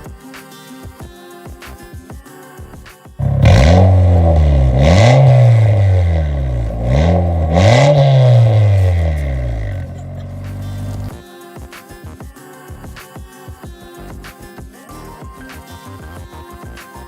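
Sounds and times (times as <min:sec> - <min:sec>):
car engine revving: 0:03.2 - 0:11.2.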